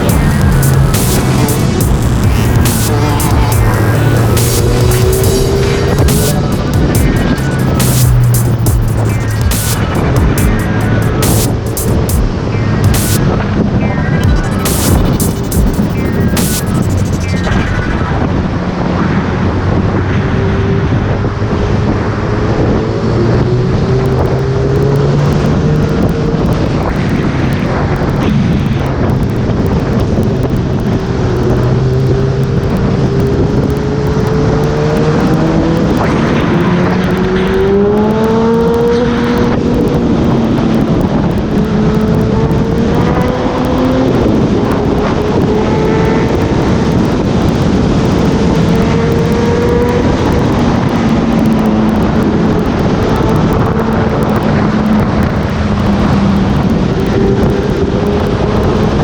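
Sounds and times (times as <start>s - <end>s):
motorcycle engine running: 0.0s - 13.1s
wind noise on microphone: 0.0s - 59.0s.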